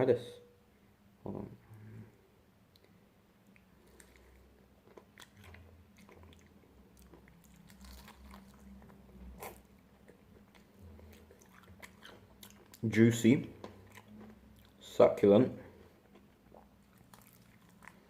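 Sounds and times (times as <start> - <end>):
chewing crispy chicken wings: 3.8 - 14.9, 15.8 - 18.0.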